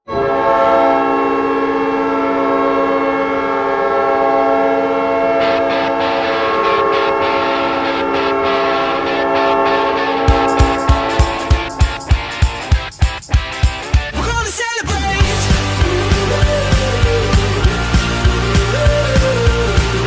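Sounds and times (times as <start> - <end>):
arena goal horn: 0.1 - 12.3.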